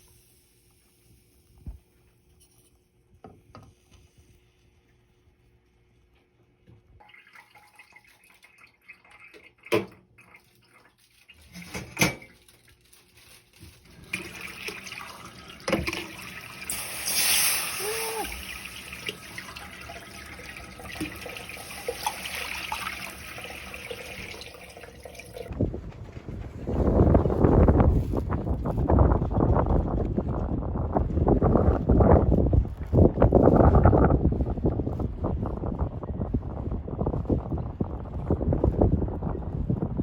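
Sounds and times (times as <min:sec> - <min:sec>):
water running: 0:07.0 - 0:13.0, 0:13.8 - 0:25.5.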